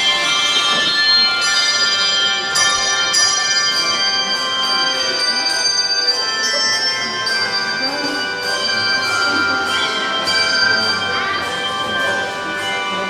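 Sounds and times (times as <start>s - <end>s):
handbell choir ringing: 0.0s - 13.0s.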